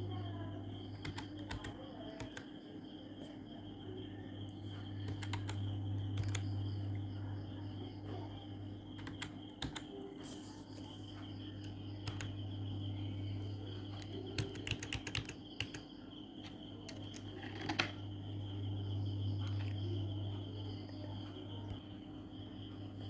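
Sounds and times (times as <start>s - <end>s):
keyboard typing: 0.8s - 2.6s, 4.7s - 7.0s, 8.9s - 10.0s, 11.6s - 12.4s, 13.8s - 18.0s, 19.4s - 20.0s.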